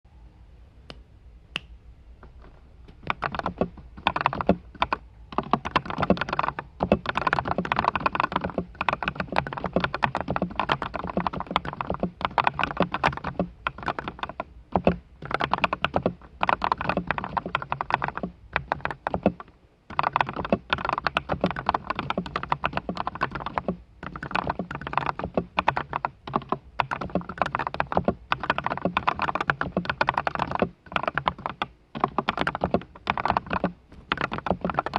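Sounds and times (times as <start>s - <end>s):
mechanical keyboard typing: 3.0s - 34.9s.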